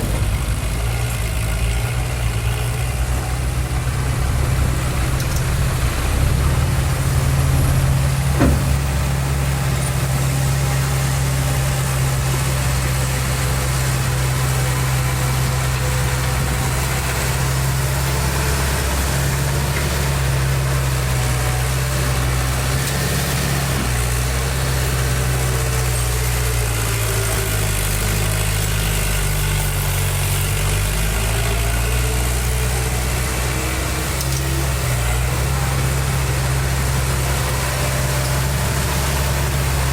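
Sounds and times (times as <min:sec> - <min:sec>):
diesel engine running: 0:00.0 - 0:39.9
single knock: 0:08.4 - 0:08.8.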